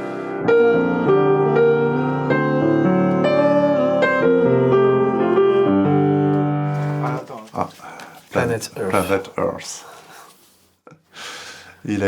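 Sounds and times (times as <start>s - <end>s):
piano chords: 0.0s - 7.4s.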